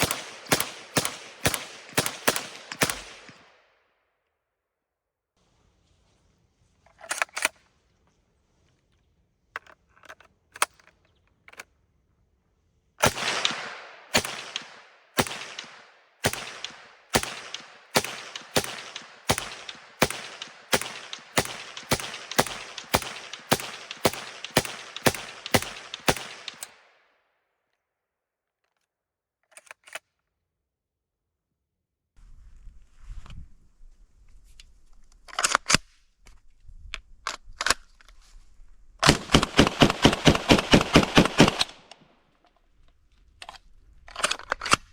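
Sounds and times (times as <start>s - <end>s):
sharp metallic clicks: 0.0s - 3.4s, 13.0s - 26.8s, 39.0s - 42.0s
submachine gun shots with echo: 0.0s - 3.7s, 13.0s - 27.0s, 39.0s - 42.1s.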